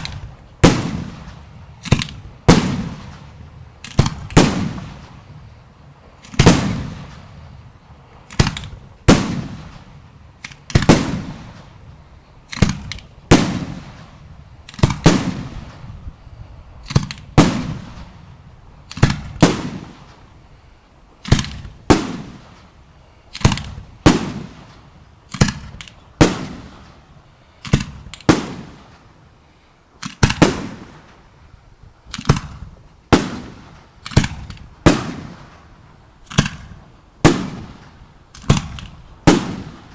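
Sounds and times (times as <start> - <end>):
fireworks bursting: 0.0 - 39.9.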